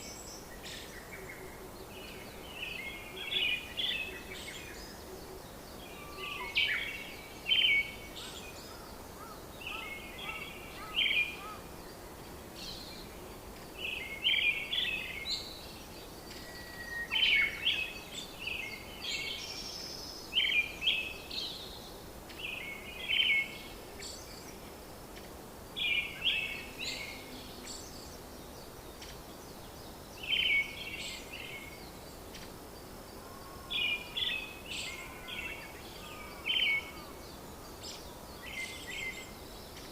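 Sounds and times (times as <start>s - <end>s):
steady background hiss: 0.0s - 39.9s
bird chirping: 33.2s - 39.9s.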